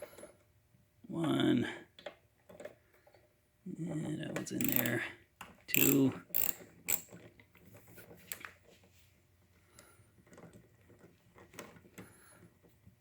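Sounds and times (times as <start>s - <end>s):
hand tools clicking on metal bolts: 4.4s - 5.0s, 5.7s - 7.2s.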